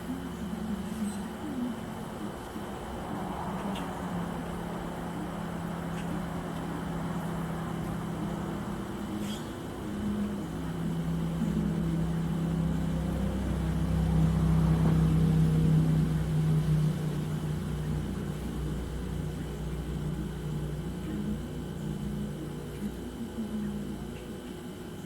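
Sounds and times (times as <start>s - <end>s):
engine hum: 0.0s - 24.1s.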